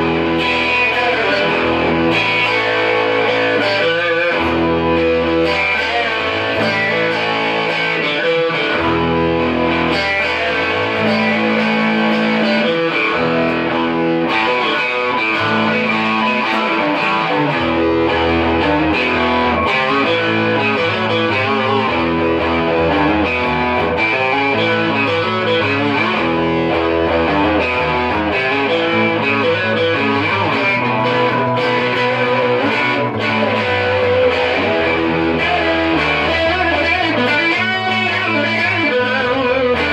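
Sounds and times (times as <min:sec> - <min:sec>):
electric guitar music: 0:00.0 - 0:39.9.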